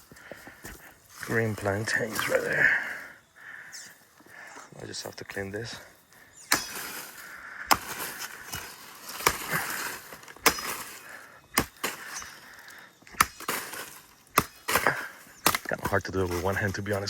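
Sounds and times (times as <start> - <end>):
rustling: 6.1 - 17.0
blade chopping plant stalk: 6.5 - 16.4.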